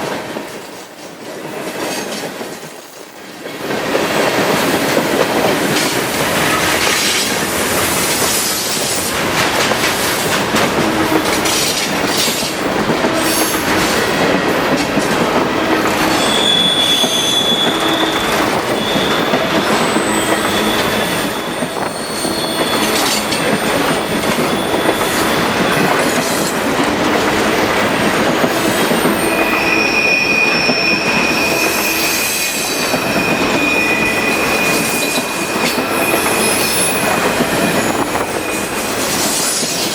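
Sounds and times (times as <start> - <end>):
train wheels clattering on rails: 0.0 - 39.9
high-pitched wheel squeals: 15.6 - 26.5, 28.8 - 39.9.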